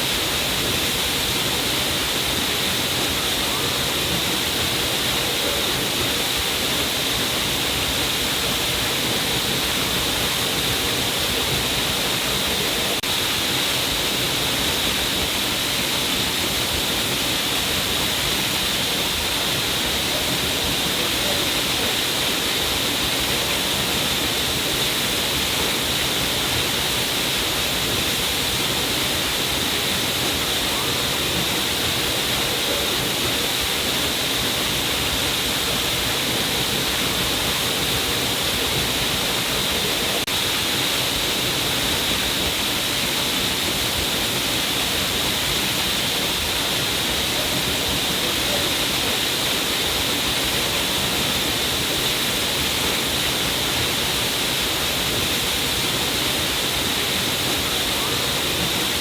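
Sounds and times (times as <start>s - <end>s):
water falling down cliff: 0.0s - 59.0s.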